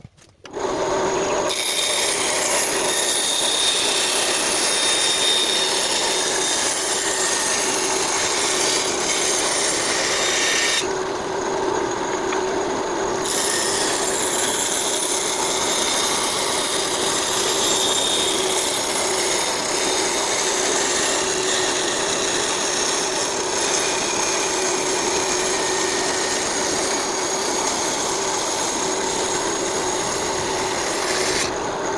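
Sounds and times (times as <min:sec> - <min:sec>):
power tool grinding wood: 0:00.4 - 0:31.9.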